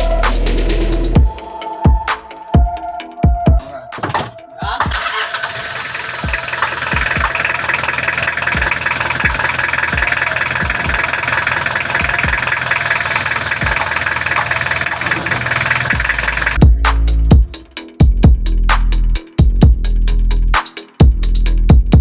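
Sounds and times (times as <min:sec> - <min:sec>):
diesel engine idling: 0:04.7 - 0:16.8
low thuds: 0:13.3 - 0:19.9.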